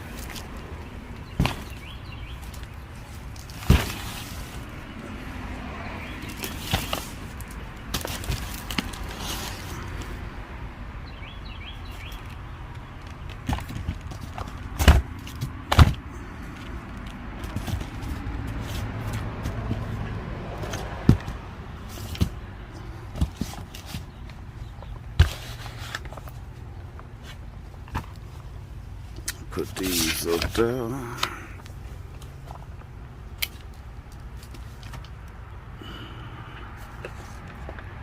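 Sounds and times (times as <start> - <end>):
boxes knocking and thudding: 1.3 - 4.6, 6.2 - 7.3, 7.9 - 9.6, 13.3 - 16.1, 23.1 - 24.2.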